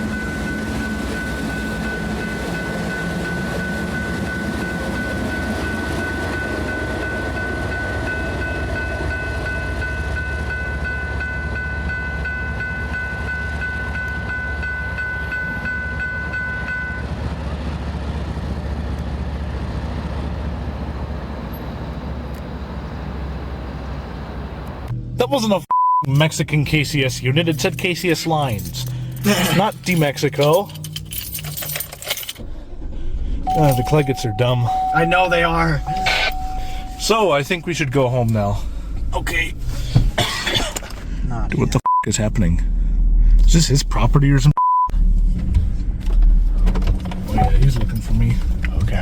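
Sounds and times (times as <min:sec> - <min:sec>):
freight train rumbling: 0:00.0 - 0:25.5, 0:26.5 - 0:49.0
high steady squeal: 0:33.5 - 0:37.9.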